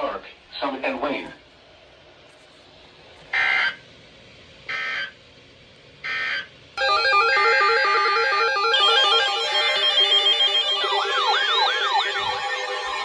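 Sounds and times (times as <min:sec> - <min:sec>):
buzzy digital chirps: 0:06.8 - 0:13.0
electronic warbling sound: 0:06.8 - 0:13.0.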